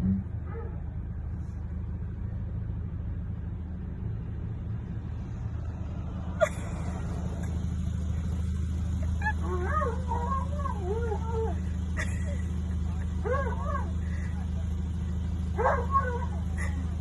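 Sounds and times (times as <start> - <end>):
vehicle engine rumble: 0.0 - 17.0.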